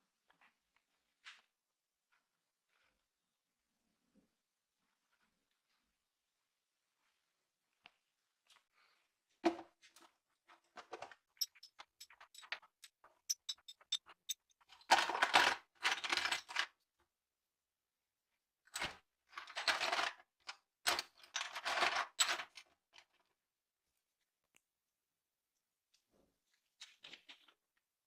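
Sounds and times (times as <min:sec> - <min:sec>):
scrubbing on metal: 0:11.4 - 0:14.5
small metal parts clinking: 0:11.4 - 0:16.6.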